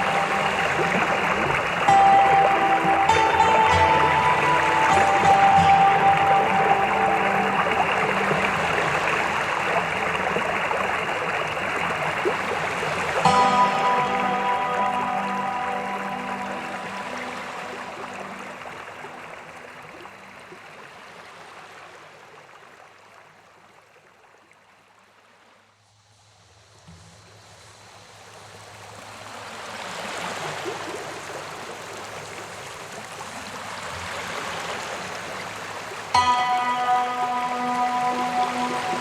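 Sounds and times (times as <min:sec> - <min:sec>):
waterfall rushing: 0:00.0 - 0:21.0, 0:27.4 - 0:39.0.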